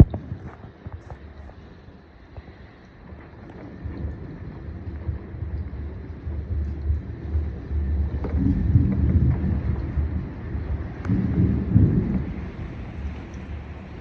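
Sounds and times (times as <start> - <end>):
thunder rumbling: 0.0 - 1.7, 3.0 - 14.0
wind buffeting microphone: 0.0 - 14.0.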